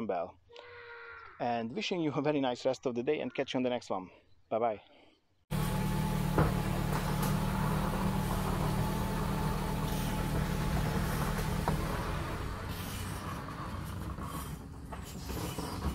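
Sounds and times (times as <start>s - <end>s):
motor humming: 5.5s - 14.6s.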